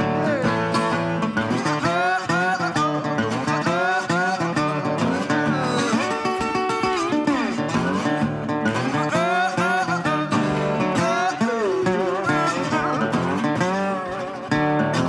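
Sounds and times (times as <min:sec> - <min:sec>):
acoustic blues guitar: 0:00.0 - 0:15.0.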